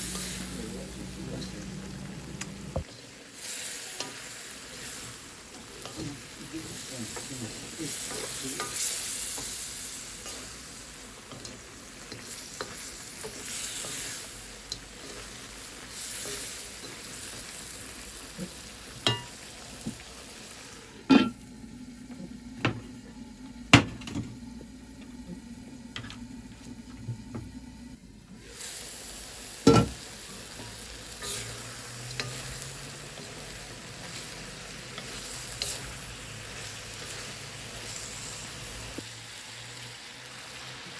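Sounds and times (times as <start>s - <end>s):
meat sizzling in a pan: 0.0s - 26.6s, 28.0s - 40.9s.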